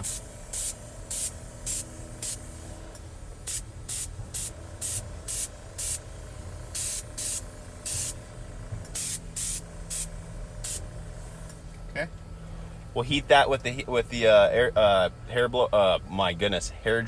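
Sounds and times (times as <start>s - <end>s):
spray gun hissing: 0.0s - 2.7s, 3.5s - 8.3s, 9.0s - 10.8s
steady low hum: 0.0s - 17.0s.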